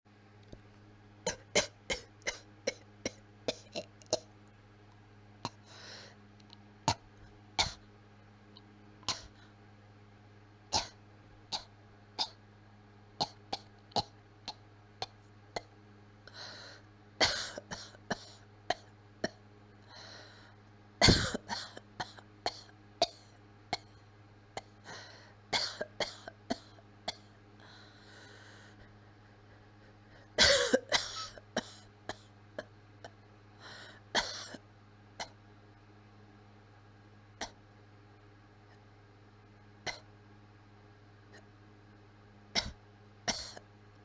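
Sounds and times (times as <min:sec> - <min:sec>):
faint low hum: 0:00.1 - 0:44.0
person coughing: 0:01.3 - 0:02.8, 0:07.6 - 0:07.8, 0:09.1 - 0:09.4, 0:17.2 - 0:18.9, 0:21.0 - 0:23.2, 0:25.6 - 0:27.3, 0:30.4 - 0:32.7, 0:34.2 - 0:34.6, 0:42.6 - 0:43.6
breathy exhalations: 0:05.6 - 0:06.2, 0:16.3 - 0:16.9, 0:19.8 - 0:20.6, 0:24.8 - 0:25.4, 0:27.6 - 0:30.4, 0:33.6 - 0:34.1.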